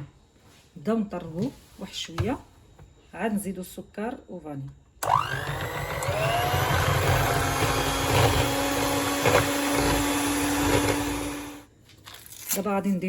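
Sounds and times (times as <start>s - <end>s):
electric mixer motor whine: 5.0s - 11.7s.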